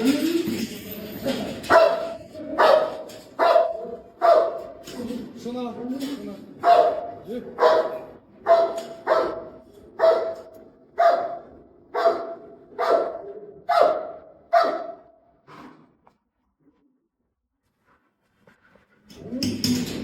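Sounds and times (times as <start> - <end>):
dog barking: 1.7 - 4.8, 6.6 - 15.2.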